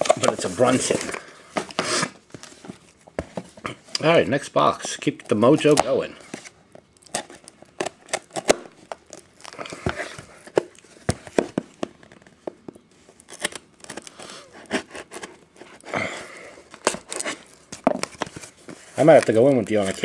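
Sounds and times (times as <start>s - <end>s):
packaging tearing and crinkling: 7.0s - 10.2s, 13.1s - 15.9s, 16.6s - 20.0s.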